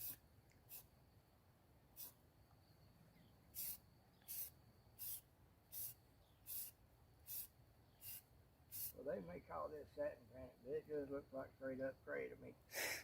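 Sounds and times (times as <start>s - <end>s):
spray paint can hissing: 0.0s - 0.9s, 2.0s - 2.2s, 3.6s - 9.0s.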